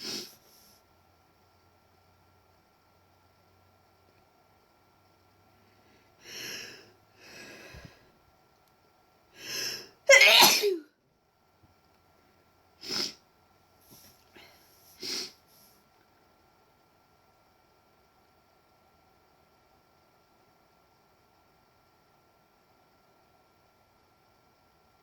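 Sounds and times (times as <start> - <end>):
breathy inhales: 5.7 - 8.1
woman sneezing: 10.1 - 10.8.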